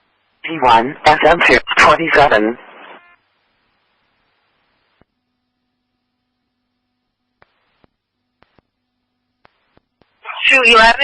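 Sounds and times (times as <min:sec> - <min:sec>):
faint low hum: 0:00.0 - 0:11.0
faint radio hiss: 0:00.0 - 0:11.0.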